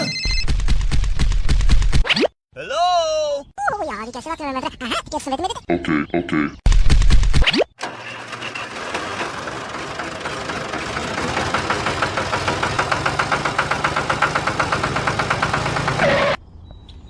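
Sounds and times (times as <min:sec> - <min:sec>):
train chugging: 0:07.8 - 0:16.4.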